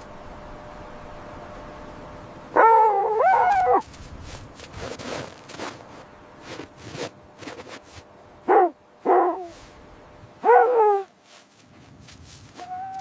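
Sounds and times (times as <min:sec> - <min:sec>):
animal barking calls: 0:02.5 - 0:03.9, 0:08.4 - 0:09.6, 0:10.4 - 0:11.1, 0:12.6 - 0:13.0.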